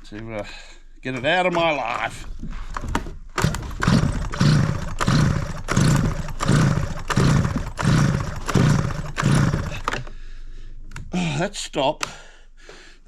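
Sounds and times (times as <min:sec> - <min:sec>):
chainsaw recoil starter pulls: 0:01.1 - 0:10.1.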